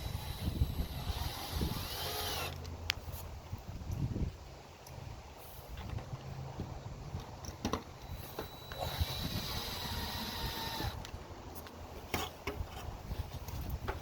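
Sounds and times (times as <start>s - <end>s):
cordless drill motor whining: 0.0s - 2.6s, 8.0s - 11.1s.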